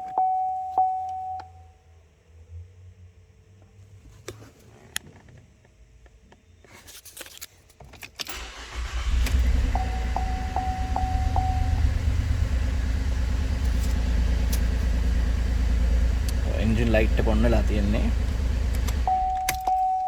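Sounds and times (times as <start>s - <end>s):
car engine cranking and idling: 8.3s - 20.0s
warning chime beeping: 9.6s - 12.4s, 19.0s - 20.0s.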